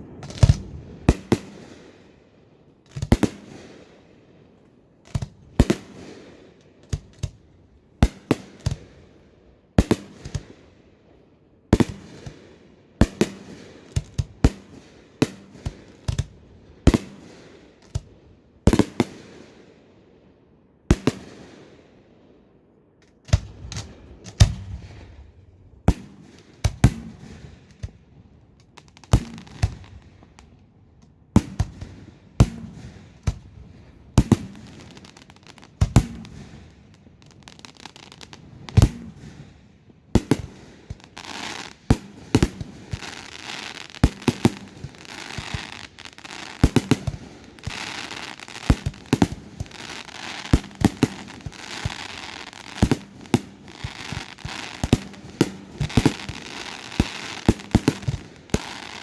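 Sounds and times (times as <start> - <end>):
fireworks crackling: 0.0 - 10.6, 23.0 - 30.6, 31.3 - 59.0
fireworks bursting with bangs: 0.0 - 11.1, 11.7 - 19.9, 20.9 - 22.0, 23.0 - 59.0.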